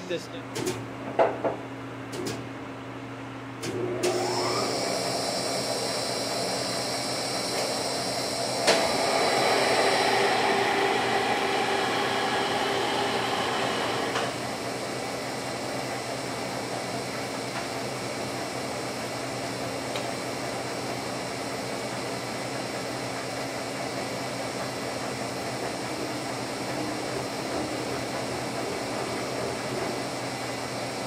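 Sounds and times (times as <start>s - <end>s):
electric motor whine: 3.8s - 14.4s.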